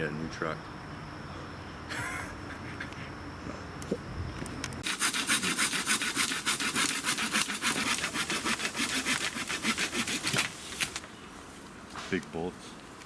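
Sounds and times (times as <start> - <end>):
hand saw cutting wood: 4.8 - 10.5.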